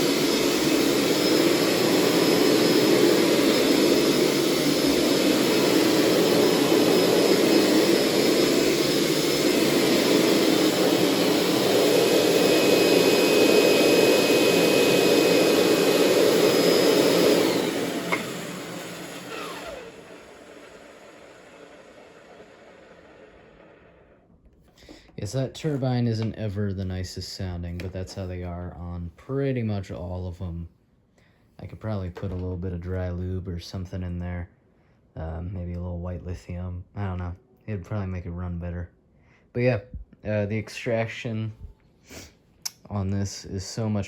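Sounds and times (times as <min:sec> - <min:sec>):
carpet cleaner high-pitched whine: 0:00.0 - 0:24.2.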